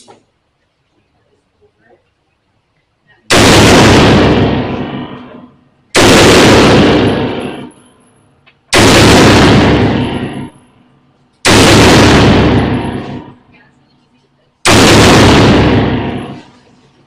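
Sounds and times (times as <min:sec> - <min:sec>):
gunshots with long echo: 0:03.3 - 0:07.8, 0:08.7 - 0:10.6, 0:11.4 - 0:13.4, 0:14.6 - 0:16.6.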